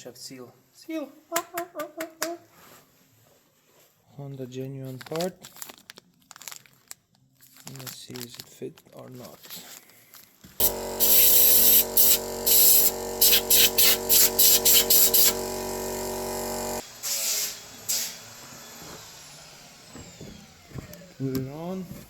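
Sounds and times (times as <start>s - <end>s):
hissing spray bursts: 10.6s - 16.8s
steady hum: 10.6s - 16.8s.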